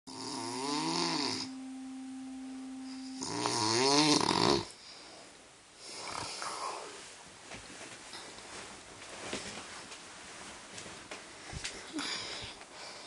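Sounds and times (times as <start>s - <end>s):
faint breath: 11.5s - 13.0s.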